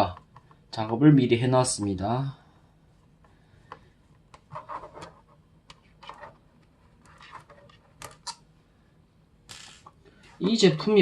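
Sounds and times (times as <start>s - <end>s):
handling laptop and small parts: 3.0s - 8.4s.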